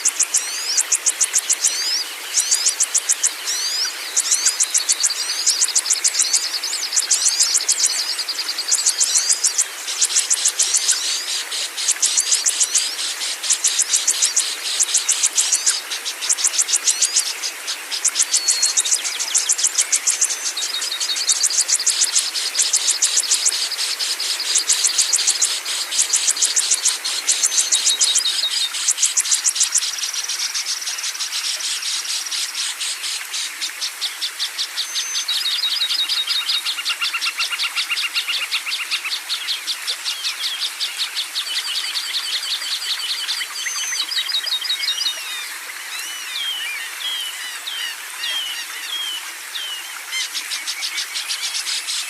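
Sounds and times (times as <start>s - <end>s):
insects chirping: 0.0s - 36.6s
constant hiss: 0.0s - 52.0s
songbird singing: 0.0s - 52.0s.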